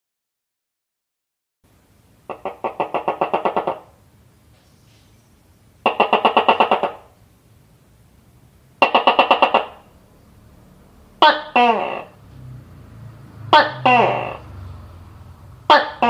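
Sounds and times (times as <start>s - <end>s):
gecko calling in rapid pulses: 2.3s - 4.0s, 5.8s - 7.2s, 8.8s - 10.0s, 13.5s - 14.5s.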